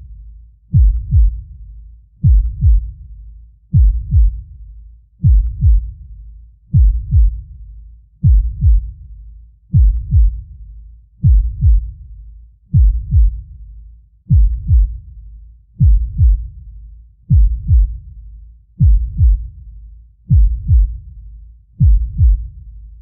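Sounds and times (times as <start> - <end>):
steady low rumble: 0.0 - 23.0
deep heartbeat thumps: 0.7 - 3.1, 3.7 - 4.6, 5.2 - 6.1, 6.7 - 7.6, 8.2 - 9.0, 9.7 - 10.6, 11.2 - 12.1, 12.7 - 13.6, 14.3 - 15.1, 15.8 - 16.6, 17.3 - 18.2, 18.8 - 19.6, 20.3 - 21.2, 21.8 - 23.0.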